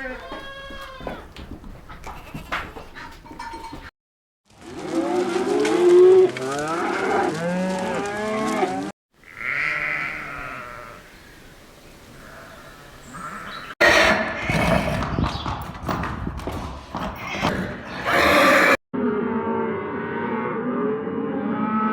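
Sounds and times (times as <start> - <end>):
flock of animals bleating: 6.4 - 11.0, 12.2 - 13.7.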